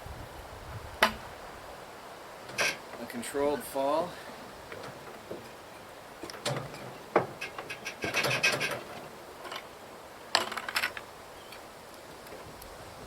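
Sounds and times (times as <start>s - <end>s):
wood scraping and knocking: 4.7s - 5.6s, 6.2s - 9.7s.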